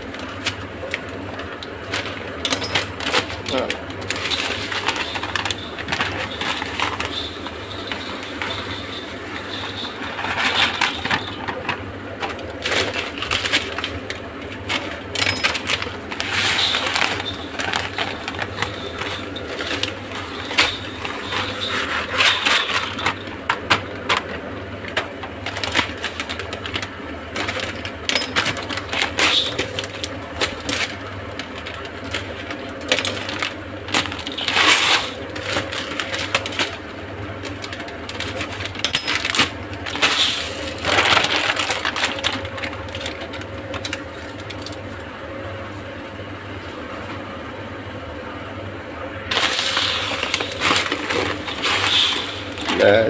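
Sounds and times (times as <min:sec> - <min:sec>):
rice rattling in metal pot: 0:00.0 - 0:44.9, 0:49.3 - 0:53.0.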